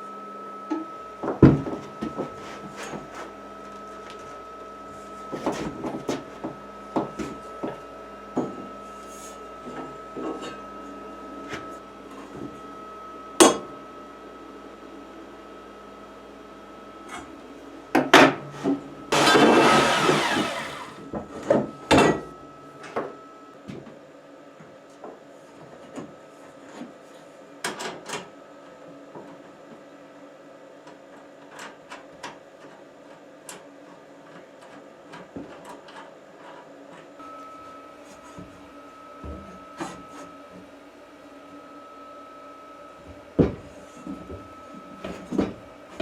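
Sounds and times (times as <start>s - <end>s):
loud noisy burst: 19.2s - 21.0s.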